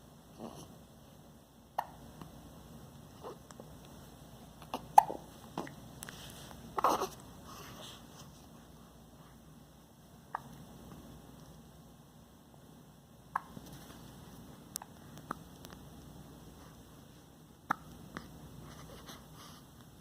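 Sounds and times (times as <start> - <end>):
baby hiccupping: 1.7 - 2.1, 4.6 - 5.8, 6.8 - 7.2.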